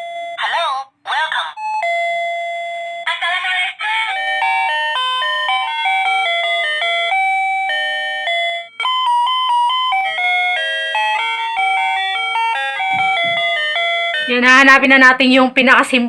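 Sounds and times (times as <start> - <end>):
electronic doorbell chime melody: 0.0 - 0.6, 1.5 - 15.0
ringtone tune: 0.0 - 15.1.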